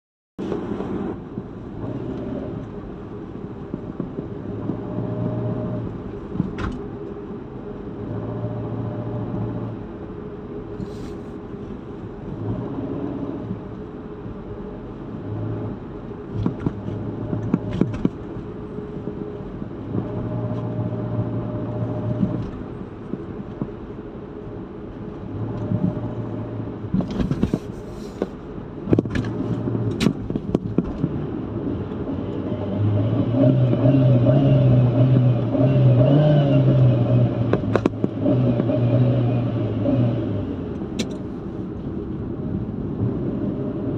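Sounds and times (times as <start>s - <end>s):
vehicle engine accelerating: 30.9s - 40.9s.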